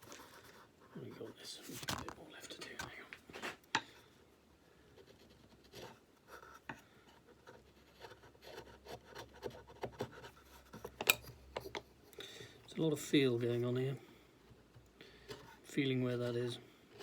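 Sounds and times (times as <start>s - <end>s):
chisel scraping wood: 5.0s - 11.9s.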